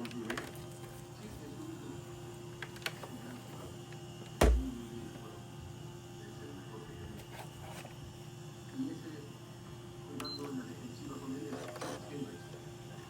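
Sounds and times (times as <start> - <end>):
dull thump: 4.4 - 4.8.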